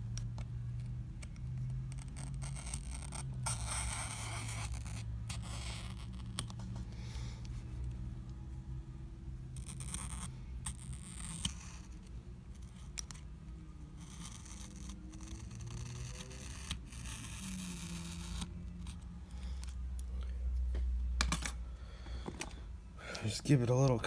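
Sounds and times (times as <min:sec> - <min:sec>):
tool scraping through adhesive: 0:01.2 - 0:06.7, 0:14.0 - 0:19.0.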